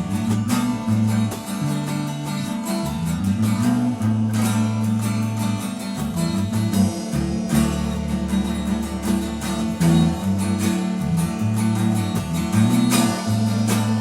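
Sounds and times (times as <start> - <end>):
bass guitar low notes: 0.0 - 14.0
strummed guitar: 0.0 - 14.0
drum and cymbal hits: 5.8 - 14.0.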